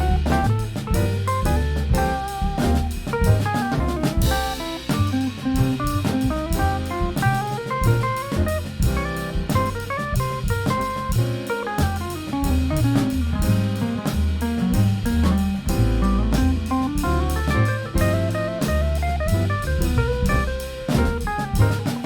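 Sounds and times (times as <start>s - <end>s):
bass line: 0.0s - 22.0s
drum kit: 0.0s - 22.0s
guitar: 16.0s - 22.0s.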